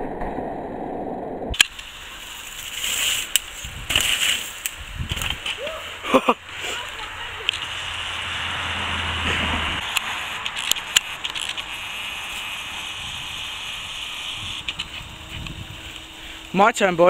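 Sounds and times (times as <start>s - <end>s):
bike tyres on dirt: 1.6s - 17.0s
bike clicking and rattling: 2.4s - 5.8s, 9.2s - 13.4s, 14.1s - 16.4s.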